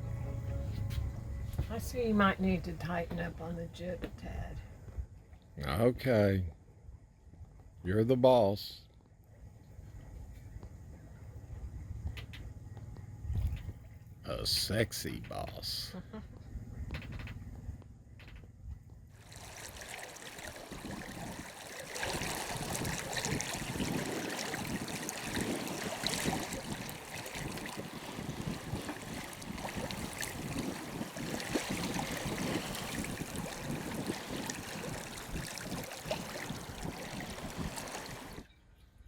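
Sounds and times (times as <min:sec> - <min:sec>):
water rushing along boat hull: 0:19.2 - 0:38.5.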